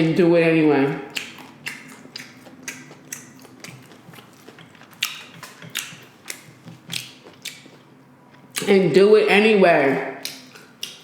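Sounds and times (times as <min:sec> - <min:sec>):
chewing crunchy chips: 0:01.0 - 0:08.7, 0:10.2 - 0:11.0.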